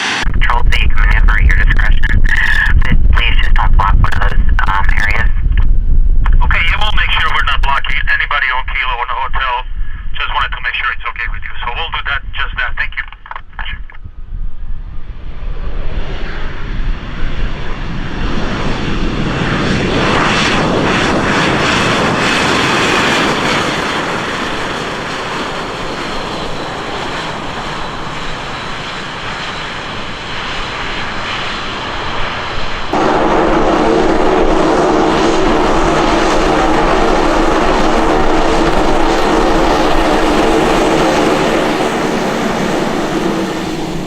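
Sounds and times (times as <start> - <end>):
jet engines roaring: 0.0 - 5.4, 14.8 - 44.0
engine with buzzing tone: 32.9 - 44.0.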